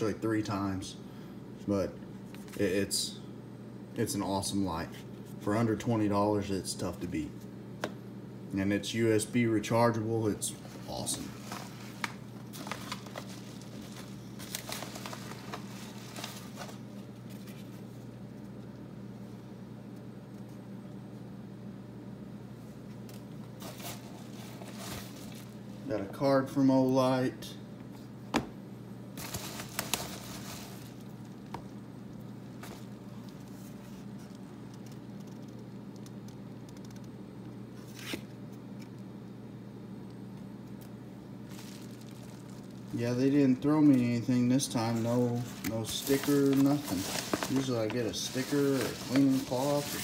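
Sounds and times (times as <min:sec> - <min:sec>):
steady low hum: 0:00.0 - 0:50.0
package clicks and rustles: 0:11.0 - 0:17.7, 0:29.2 - 0:31.6, 0:45.4 - 0:50.0
clicks and small ticks: 0:34.7 - 0:37.2.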